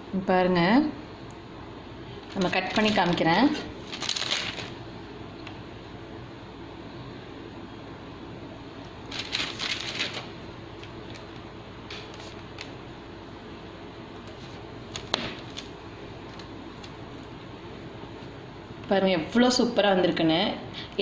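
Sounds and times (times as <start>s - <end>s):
steady low hum: 0.0s - 21.0s
rustling and crinkling: 2.2s - 4.8s, 9.1s - 12.8s.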